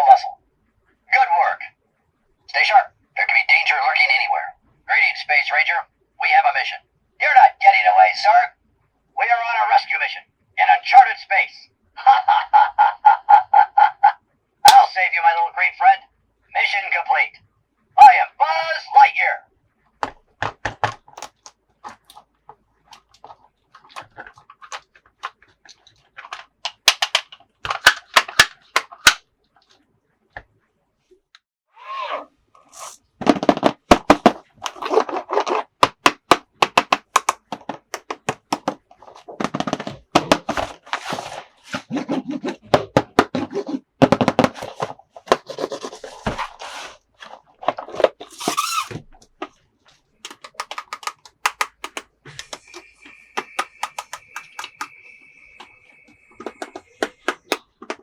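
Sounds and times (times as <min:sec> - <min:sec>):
plastic toys clicking and tapping: 0:20.0 - 0:29.2, 0:32.7 - 0:40.8, 0:47.7 - 0:49.5, 0:50.2 - 0:58.0
packaging crinkling and rattling: 0:21.0 - 0:22.2, 0:22.9 - 0:29.2, 0:32.7 - 0:41.3, 0:44.6 - 0:49.6, 0:50.3 - 0:52.0, 0:52.6 - 0:54.9
short squeaky sounds: 0:31.8 - 0:33.0, 0:48.2 - 0:49.1.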